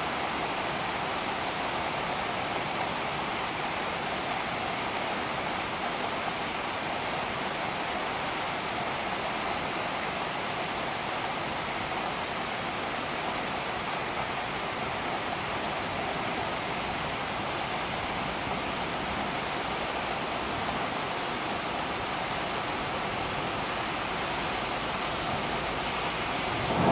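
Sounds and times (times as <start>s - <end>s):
storm rushing noise: 22.2s - 26.9s.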